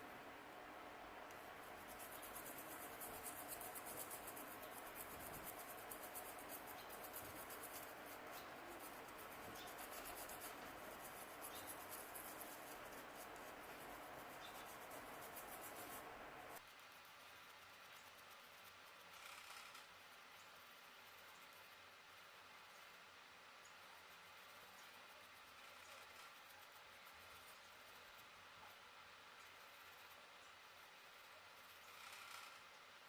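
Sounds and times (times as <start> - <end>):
brush scrubbing circuit board: 1.3 - 16.7.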